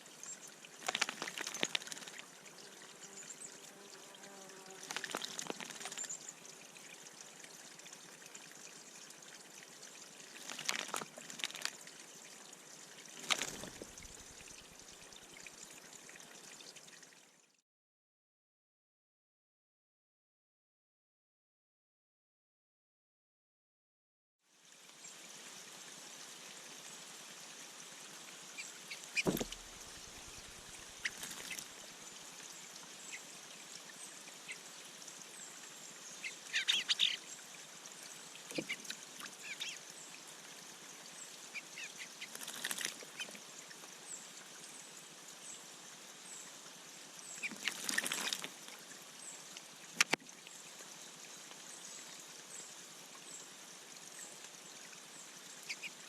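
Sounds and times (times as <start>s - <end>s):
birds splashing in water: 0.6s - 2.3s, 4.7s - 6.3s, 10.3s - 12.0s, 13.1s - 14.9s, 28.6s - 31.9s, 36.2s - 37.2s, 38.5s - 39.8s, 41.5s - 43.4s, 47.4s - 48.8s
sharp knocks: 29.2s - 29.8s.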